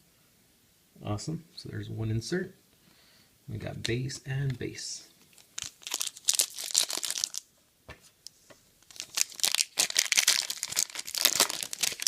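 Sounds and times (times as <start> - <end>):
wrapper crinkling and tearing: 5.3 - 7.5, 8.8 - 12.0.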